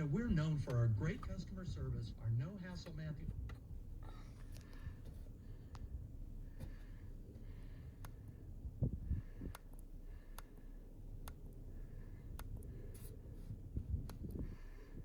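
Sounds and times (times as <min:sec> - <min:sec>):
light handling clicks: 0:09.5 - 0:11.6, 0:12.3 - 0:13.1, 0:14.0 - 0:14.5.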